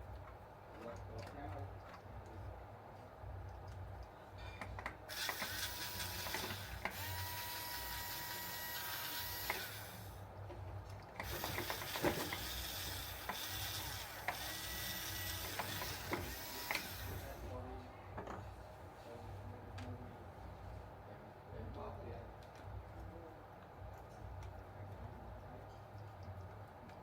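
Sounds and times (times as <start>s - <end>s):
toy motor whirring: 5.1s - 10.2s, 11.2s - 17.4s.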